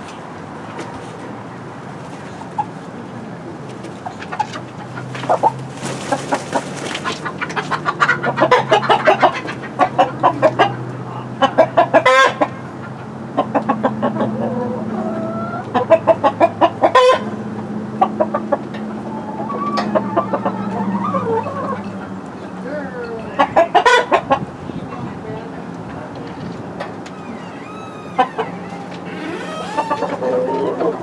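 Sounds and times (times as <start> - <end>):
chickens clucking: 3.8 - 24.4.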